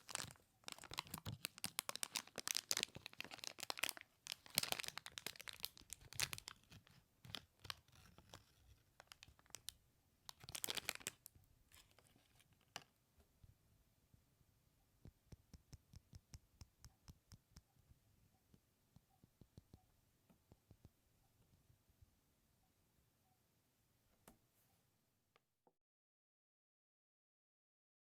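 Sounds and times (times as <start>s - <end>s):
plastic bag crackling: 0.0s - 9.7s, 10.3s - 12.8s.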